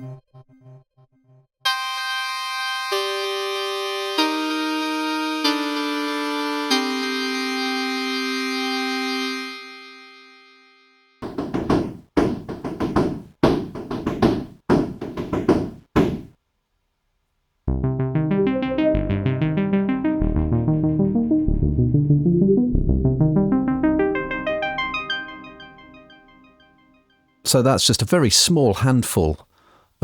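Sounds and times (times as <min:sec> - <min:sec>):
arpeggiated synth notes: 0:17.7 - 0:26.8.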